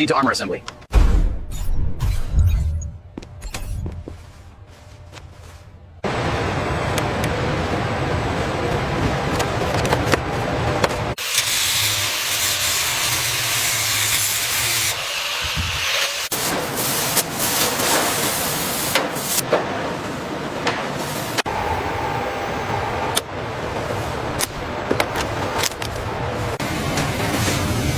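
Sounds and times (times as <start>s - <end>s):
low hum: 0.9s - 11.2s.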